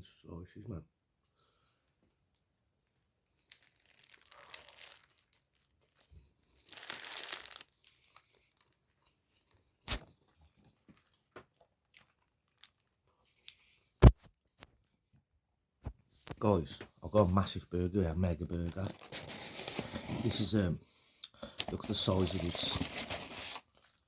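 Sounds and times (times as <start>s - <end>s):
paper wrapping rustling and tearing: 3.5s - 8.7s, 18.6s - 20.5s, 21.5s - 23.8s.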